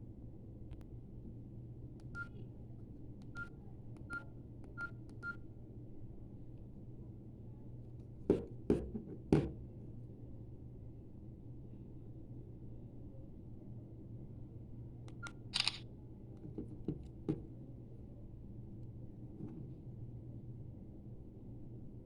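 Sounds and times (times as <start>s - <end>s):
keypad click and beep: 2.0s - 2.3s, 3.3s - 5.4s.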